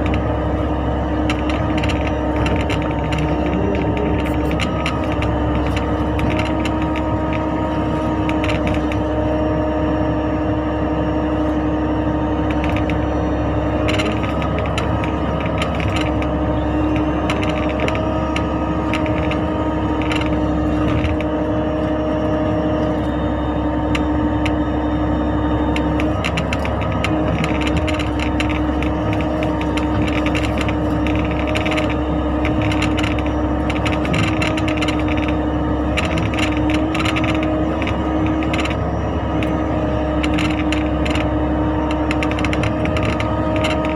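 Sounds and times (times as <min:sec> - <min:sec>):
diesel engine running: 0:00.0 - 0:43.9
steady whine: 0:00.0 - 0:43.9
metallic clicks and rattles: 0:13.8 - 0:21.4, 0:25.8 - 0:43.9.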